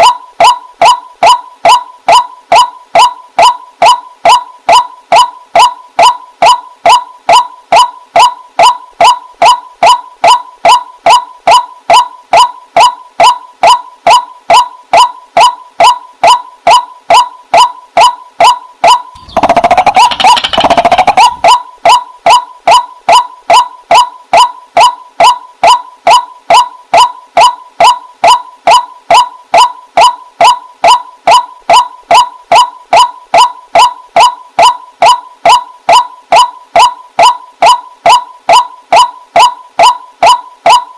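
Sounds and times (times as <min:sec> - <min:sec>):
harsh bird call: 0:19.2 - 0:21.5
waterhen calling: 0:19.2 - 0:21.6.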